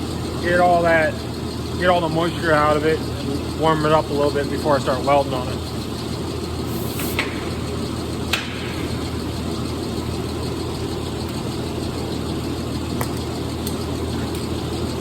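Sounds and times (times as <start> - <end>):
gas torch burning: 6.6 - 9.4.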